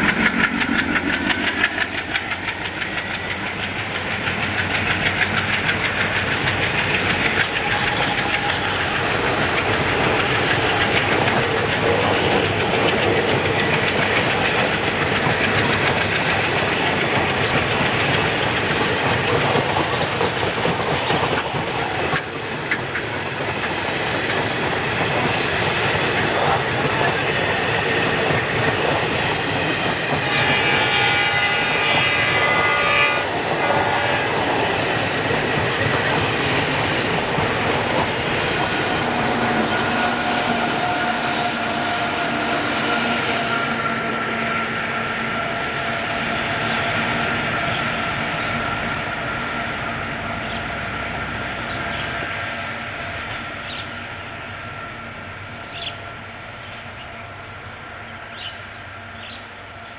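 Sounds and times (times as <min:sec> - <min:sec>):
train wheels rushing on rails: 0:00.0 - 0:59.9
high multi-pitch horn tone: 0:30.3 - 0:34.5.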